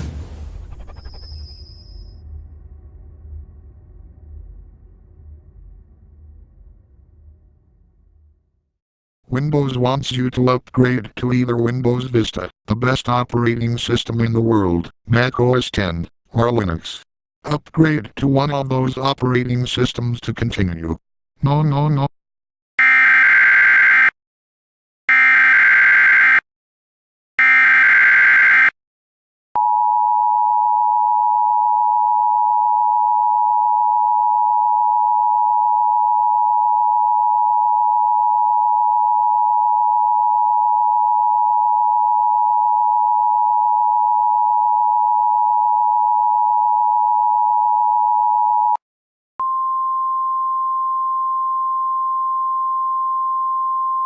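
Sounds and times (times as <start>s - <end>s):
single steady tone: 49.4s - 54.0s.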